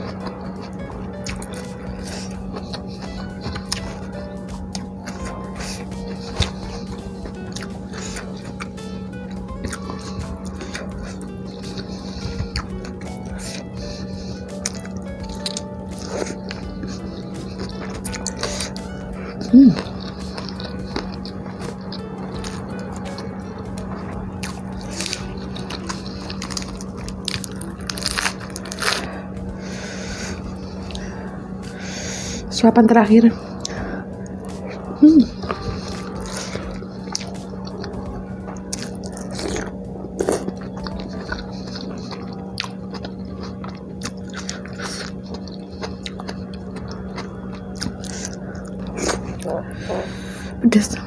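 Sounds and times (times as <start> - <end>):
person chewing food: 0.0 - 32.5, 33.3 - 51.0
steady low hum: 0.0 - 51.0
wet mouth sounds: 9.6 - 22.0, 38.5 - 50.6.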